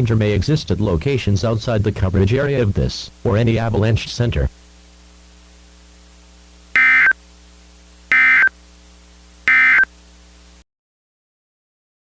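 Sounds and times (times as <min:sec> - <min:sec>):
low steady hum: 0:00.0 - 0:10.6
harsh warbling data tones: 0:06.8 - 0:07.2, 0:08.1 - 0:08.5, 0:09.5 - 0:09.9.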